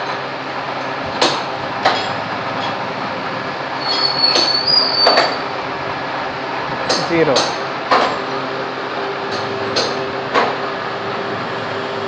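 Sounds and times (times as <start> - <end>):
milling machine running: 0.0 - 12.0
high-pitched metal squeal: 3.8 - 5.4.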